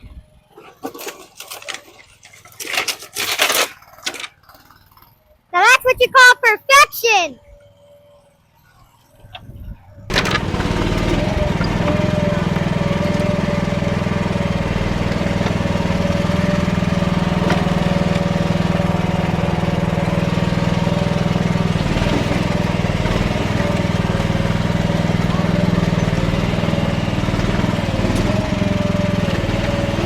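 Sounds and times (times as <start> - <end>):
excavator engine running: 8.2 - 30.0.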